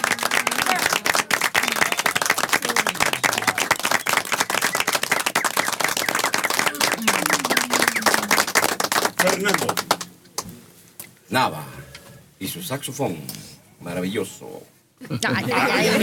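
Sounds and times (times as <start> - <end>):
faint voices: 0.0 - 9.9
crowd applauding: 0.0 - 10.5.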